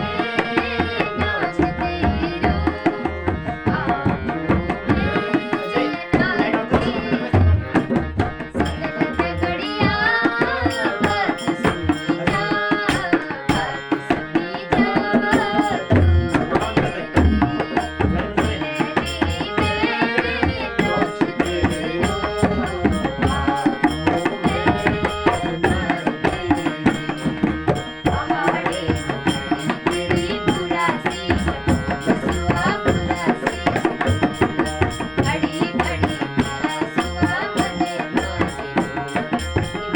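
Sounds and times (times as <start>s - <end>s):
hand drum rhythm: 0.0s - 39.9s.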